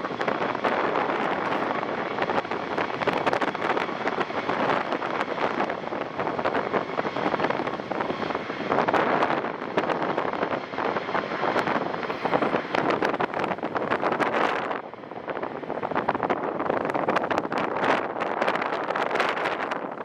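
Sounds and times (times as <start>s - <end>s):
jet engines roaring: 0.0s - 20.0s
wind buffeting microphone: 0.0s - 20.0s.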